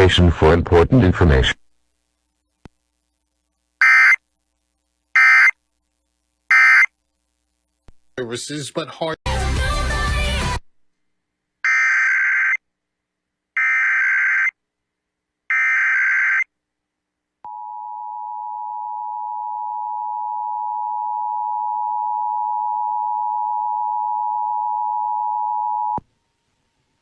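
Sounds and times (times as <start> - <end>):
harsh digital data tones: 5.2 - 5.6.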